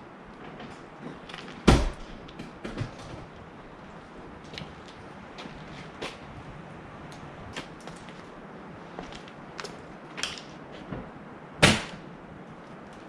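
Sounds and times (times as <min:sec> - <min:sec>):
loud sharp knock: 0:11.6 - 0:12.0.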